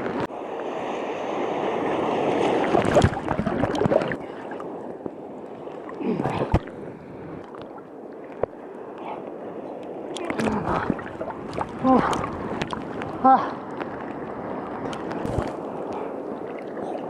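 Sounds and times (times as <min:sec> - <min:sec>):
seawater sloshing and churning: 0:00.7 - 0:17.0
water gurgle: 0:02.5 - 0:08.6, 0:09.8 - 0:17.0.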